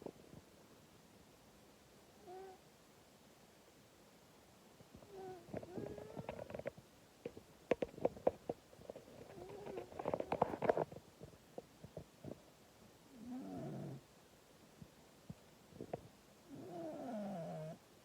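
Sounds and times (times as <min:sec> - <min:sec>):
cat snoring: 0:05.1 - 0:06.2, 0:13.1 - 0:14.0, 0:16.5 - 0:17.8.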